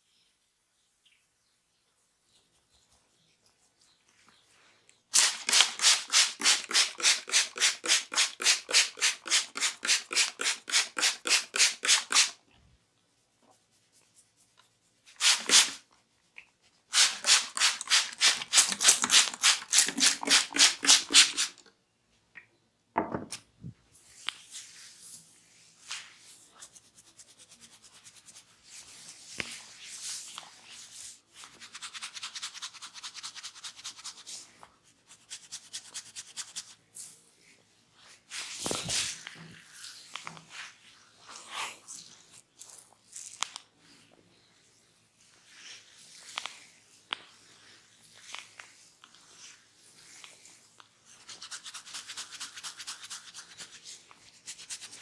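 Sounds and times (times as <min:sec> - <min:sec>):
hands rubbing skin and hair: 0:05.1 - 0:12.4, 0:13.2 - 0:15.9, 0:16.9 - 0:21.6, 0:24.0 - 0:37.1, 0:38.0 - 0:43.5, 0:45.2 - 0:55.0.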